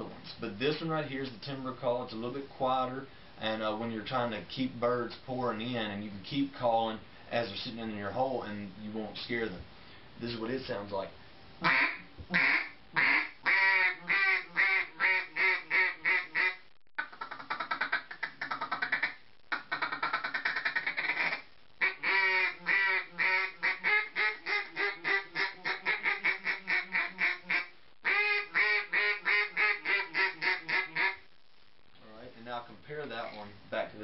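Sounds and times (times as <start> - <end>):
duck call quacks: 11.6 - 31.2
rapid duck feeding chatter: 11.6 - 31.2.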